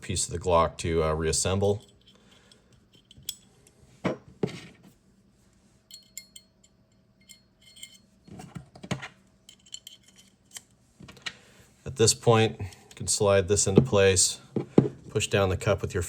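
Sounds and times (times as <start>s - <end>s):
small metal parts clicking: 9.5s - 10.8s.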